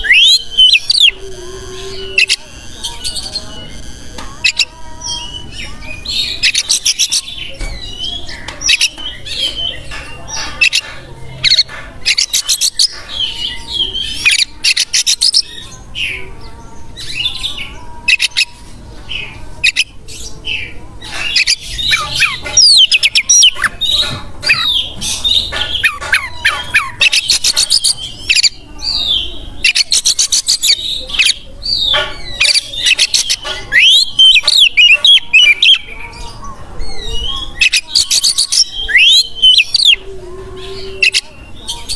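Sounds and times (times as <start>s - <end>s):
songbird singing whistles and trills: 0.0s - 1.2s, 19.2s - 40.1s.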